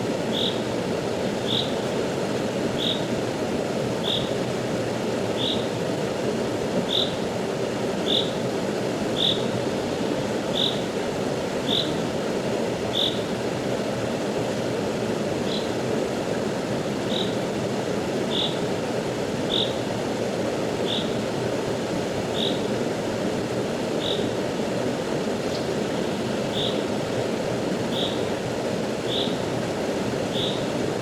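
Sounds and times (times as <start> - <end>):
rushing stream water: 0.0 - 31.0
high chirping call: 0.3 - 0.6, 1.4 - 1.8, 2.8 - 3.0, 4.0 - 4.3, 6.9 - 7.1, 27.9 - 28.2, 29.1 - 29.4, 30.3 - 30.6.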